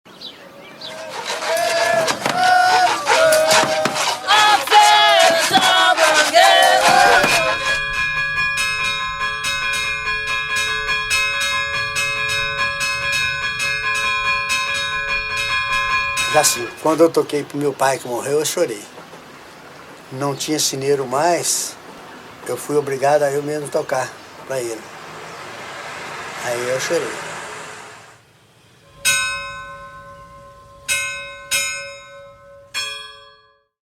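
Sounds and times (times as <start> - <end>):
voices singing together: 0.9 - 8.0
church bells ringing: 1.2 - 4.4, 6.6 - 17.5, 28.8 - 33.7.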